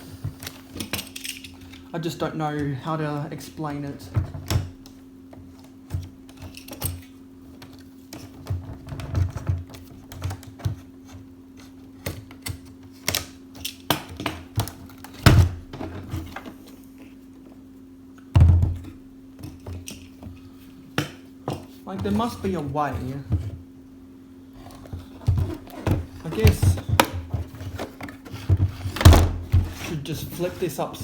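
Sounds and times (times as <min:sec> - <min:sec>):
steady low hum: 0:00.0 - 0:31.0
heavy thumps: 0:25.2 - 0:27.6, 0:28.5 - 0:30.0.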